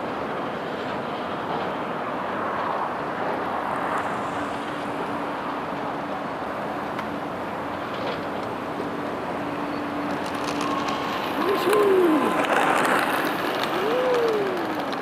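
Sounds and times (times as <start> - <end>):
road traffic rushing: 0.0 - 15.0.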